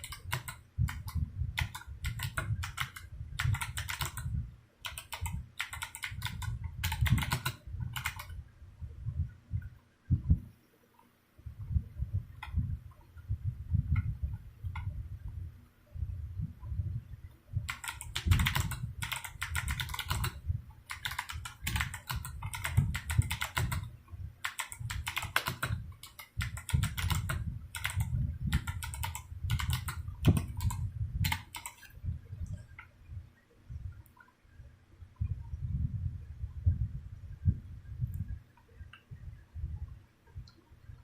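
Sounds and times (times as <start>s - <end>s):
clicky keyboard typing: 0.0s - 8.4s, 17.7s - 32.9s.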